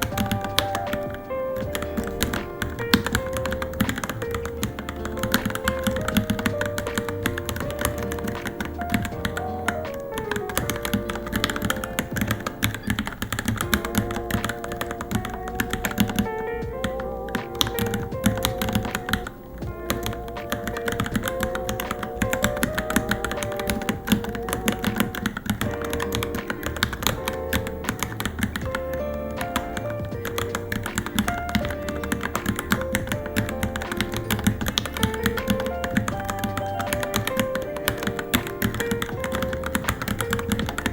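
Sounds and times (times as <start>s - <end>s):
background music: 0.0s - 40.9s
mechanical keyboard typing: 0.0s - 40.9s.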